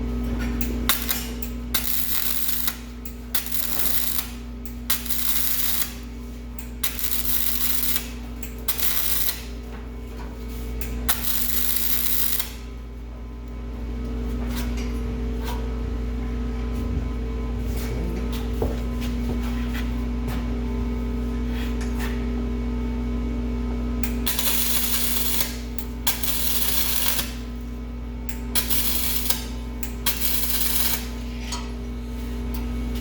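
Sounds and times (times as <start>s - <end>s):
steady low hum: 0.0s - 33.0s
welder sizzling bursts: 1.8s - 2.8s, 3.4s - 6.0s, 6.9s - 8.1s, 8.7s - 9.5s, 11.1s - 12.6s, 24.3s - 27.4s, 28.6s - 29.5s, 30.1s - 31.1s.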